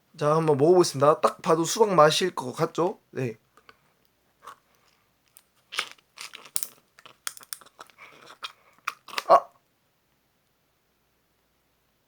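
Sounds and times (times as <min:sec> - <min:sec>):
sharp crackles and clicks: 0:05.3 - 0:09.3.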